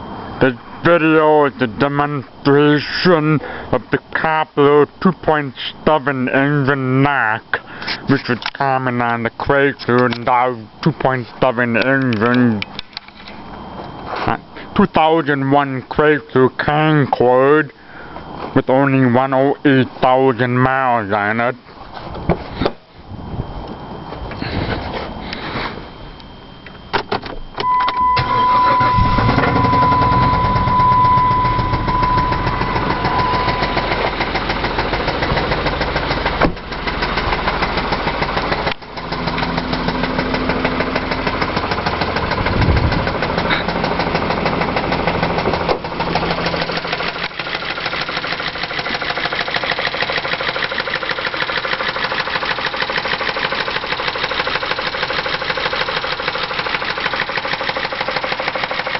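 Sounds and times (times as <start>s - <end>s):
steady high tone: 22.9s - 35.8s
car engine starting: 27.6s - 58.9s
engine idling with knock: 29.0s - 58.9s.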